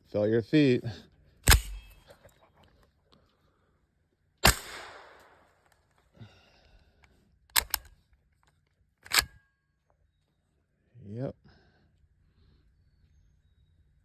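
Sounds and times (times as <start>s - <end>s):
suppressed pistol shots: 1.4s - 2.0s, 4.4s - 5.6s.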